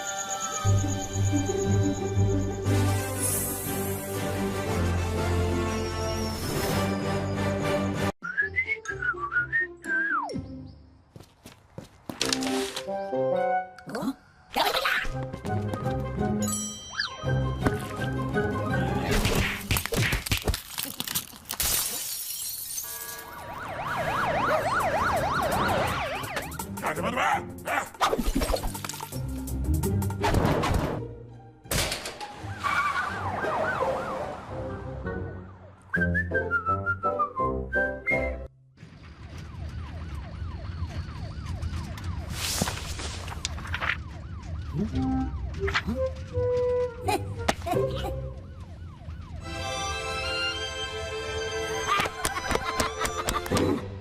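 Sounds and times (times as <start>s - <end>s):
glass breaking crash: 19.7s - 23.2s
wailing alarm siren: 23.2s - 26.8s, 32.7s - 35.9s, 38.8s - 47.0s, 47.8s - 51.8s.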